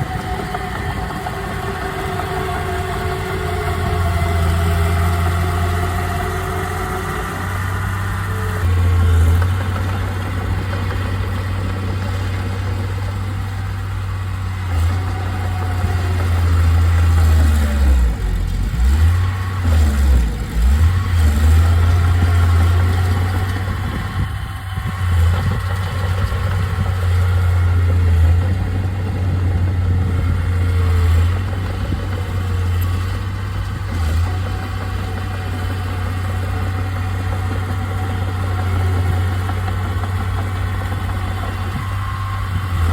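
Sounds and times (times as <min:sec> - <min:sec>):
heavy diesel engine rumbling: 0:00.0 - 0:42.9.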